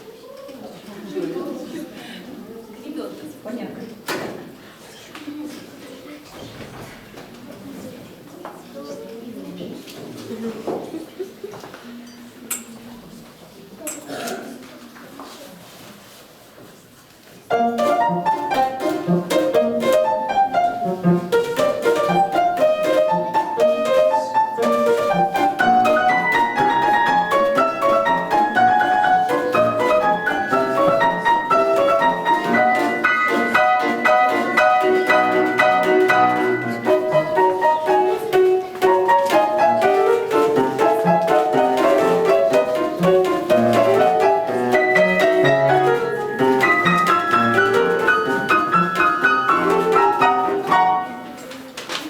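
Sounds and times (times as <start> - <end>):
brisk piano music: 17.5 - 51.5.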